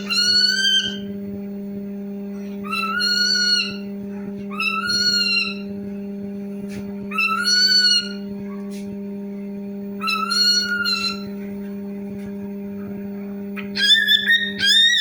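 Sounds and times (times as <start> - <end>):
bird giving meow-like calls: 0.0 - 1.1, 2.6 - 3.9, 4.5 - 5.7, 7.1 - 8.3, 10.0 - 11.3, 13.6 - 15.0
steady low hum: 0.0 - 15.0.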